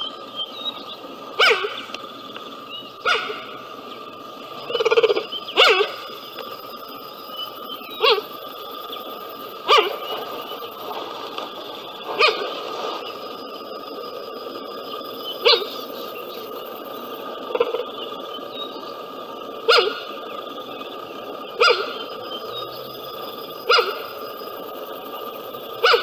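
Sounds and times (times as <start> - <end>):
cheetah yelping chirps: 0.0 - 2.0, 2.6 - 11.2, 11.8 - 13.2, 15.0 - 19.0, 19.6 - 20.4, 21.4 - 24.6, 25.5 - 26.0.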